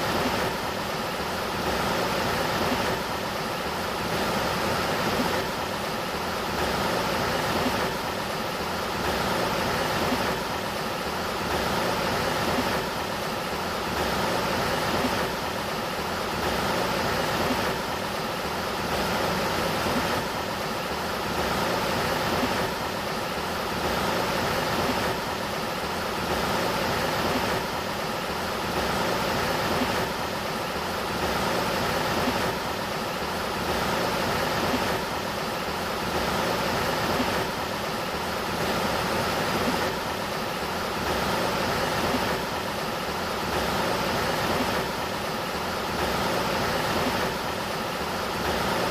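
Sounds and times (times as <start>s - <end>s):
river water rushing: 0.0s - 48.9s.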